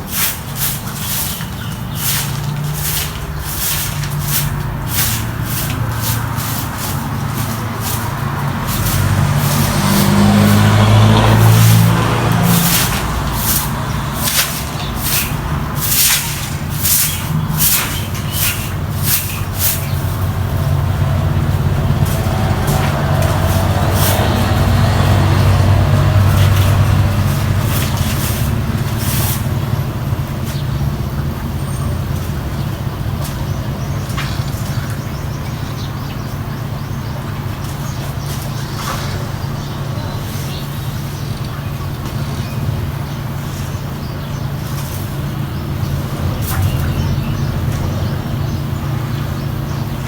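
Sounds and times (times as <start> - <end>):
low motor hum: 0.0 - 50.0
brief scraping or hissing: 0.1 - 8.0, 12.5 - 20.0.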